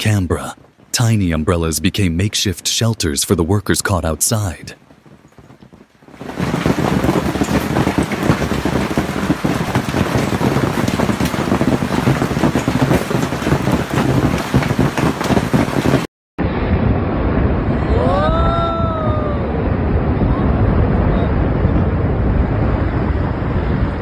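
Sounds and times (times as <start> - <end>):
hail pelting down: 4.2 - 16.1.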